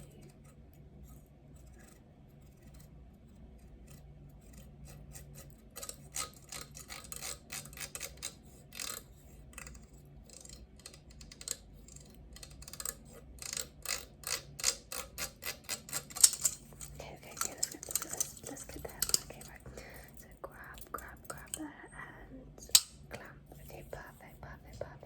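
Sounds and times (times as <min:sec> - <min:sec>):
small hard object clicking: 0:03.7 - 0:21.6.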